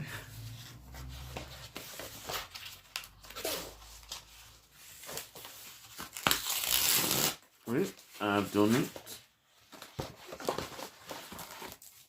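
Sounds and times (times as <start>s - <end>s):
packaging tearing and rustling: 5.0s - 7.4s.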